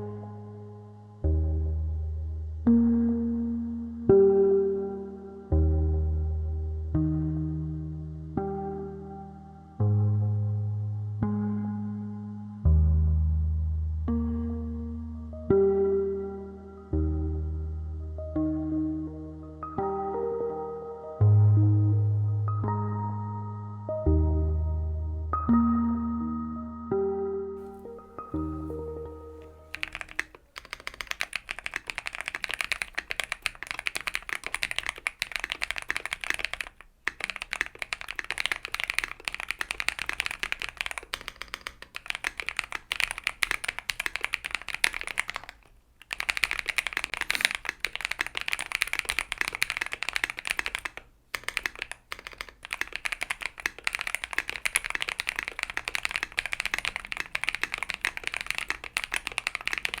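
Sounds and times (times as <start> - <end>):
fast mechanical keyboard typing: 27.7 - 60.0.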